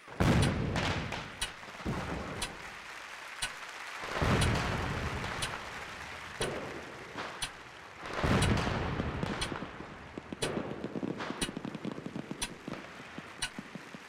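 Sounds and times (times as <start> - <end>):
fireworks booming: 0.0 - 3.0, 4.0 - 14.0
fireworks bangs: 0.0 - 14.0
fireworks crackling: 0.0 - 14.0
clock ticking: 0.3 - 1.6, 2.4 - 2.6, 5.4 - 5.6, 8.4 - 8.6, 9.4 - 9.6, 12.4 - 12.6.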